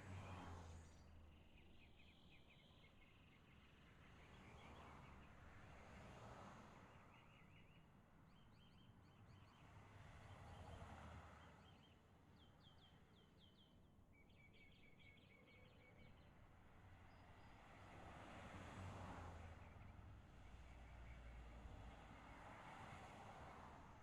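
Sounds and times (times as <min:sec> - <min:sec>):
songbirds chirping: 0:00.2 - 0:05.4, 0:11.4 - 0:17.6.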